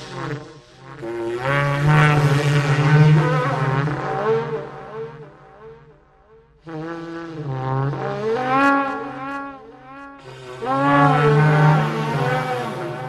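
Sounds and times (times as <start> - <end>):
eerie wailing drone: 10.2 - 13.0.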